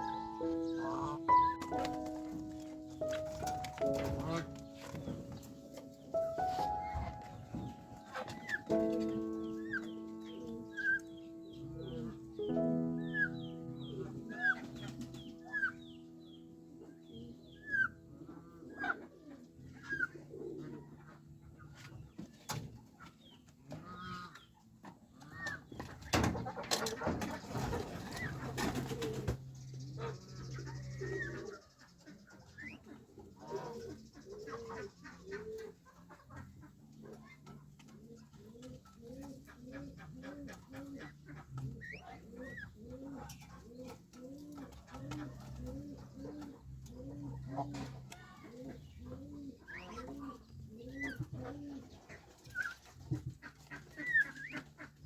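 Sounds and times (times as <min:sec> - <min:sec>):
birds chirping: 0:00.0 - 0:55.0.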